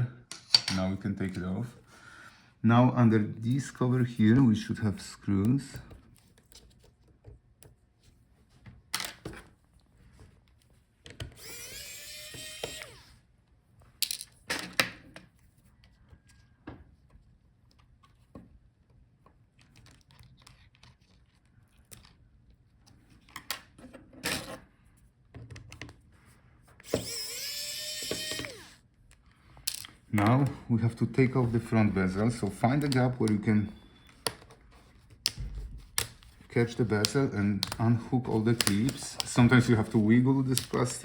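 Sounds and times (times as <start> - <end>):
electric screwdriver whirring: 11.3 - 13.2, 26.8 - 28.8.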